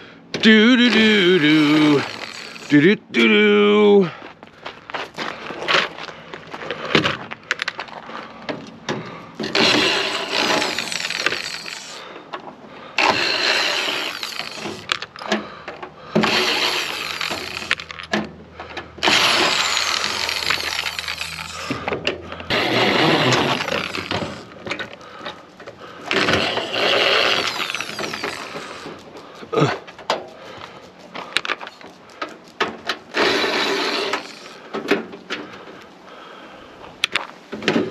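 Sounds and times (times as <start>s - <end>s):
metal scraping and prying: 1.0s - 2.8s, 9.4s - 12.0s, 13.0s - 25.4s, 26.0s - 29.1s, 32.7s - 35.4s
sharp clicks and knocks: 6.9s - 35.9s.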